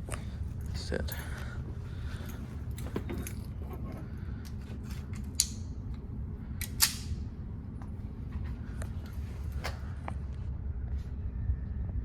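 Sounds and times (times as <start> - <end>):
metallic clicks of pistol handling: 5.1 - 5.7, 6.6 - 7.2.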